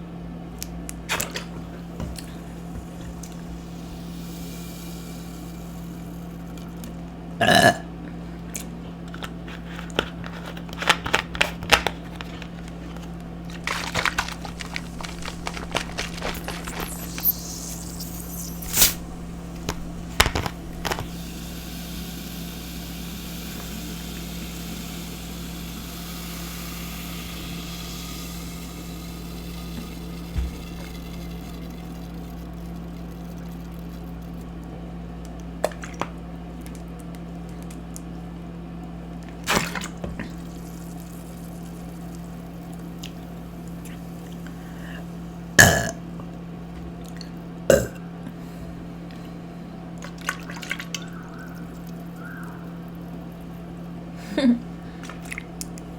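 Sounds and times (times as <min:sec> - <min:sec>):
steady low hum: 0:00.0 - 0:55.9
wet mouth sounds eating: 0:12.0 - 0:34.6.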